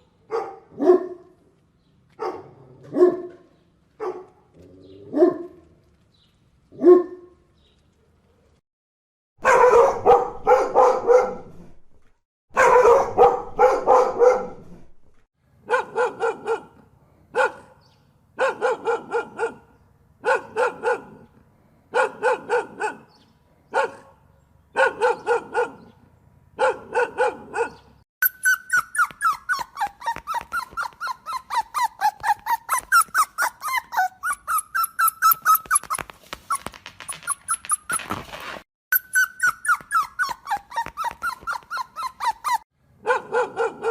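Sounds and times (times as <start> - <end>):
dog barking: 0.2 - 1.3, 2.2 - 4.4, 5.1 - 5.6, 6.8 - 7.4, 9.4 - 11.6, 12.6 - 14.8, 15.6 - 21.3, 21.9 - 26.0, 26.6 - 27.9, 39.4 - 43.9
dog whimpering: 28.2 - 38.1, 39.0 - 42.6.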